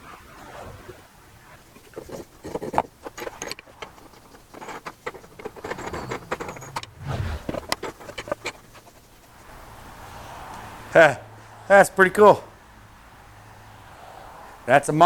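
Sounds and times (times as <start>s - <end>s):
wooden parts and hardware rattling: 1.7s - 9.5s.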